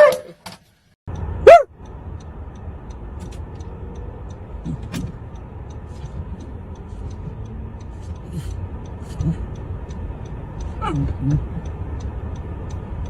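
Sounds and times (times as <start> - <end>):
faint regular ticking: 1.1 - 13.0
vehicle engine rumble: 1.1 - 13.0.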